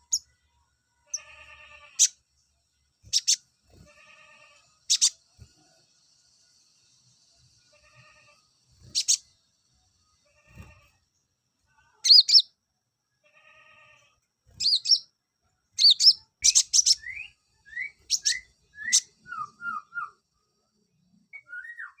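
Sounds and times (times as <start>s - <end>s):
sunbird singing: 3.0s - 3.4s, 4.7s - 5.4s, 8.8s - 9.4s, 12.0s - 12.5s, 14.6s - 15.1s, 15.8s - 22.0s.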